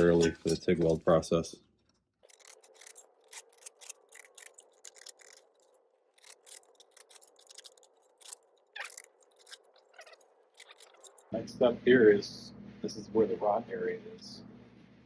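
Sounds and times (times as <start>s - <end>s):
deburring tool scraping metal edge: 2.2s - 11.3s.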